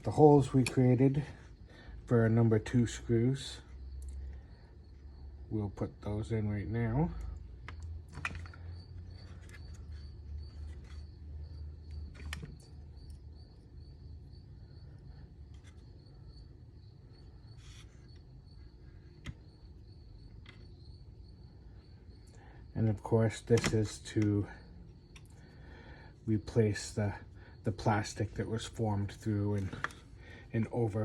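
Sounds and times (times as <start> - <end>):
crickets chirping: 0.0 - 31.0.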